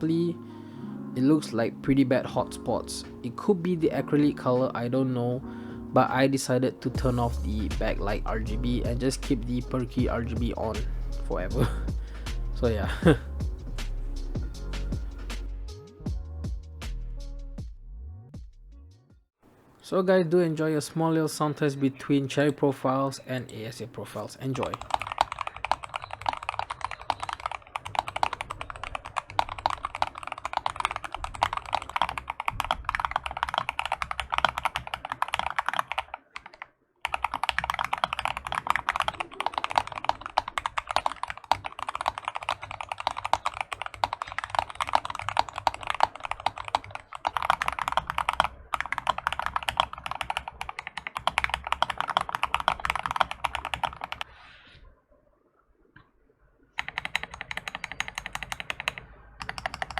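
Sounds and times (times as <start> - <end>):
fast mechanical keyboard typing: 24.4 - 54.3, 56.8 - 59.9.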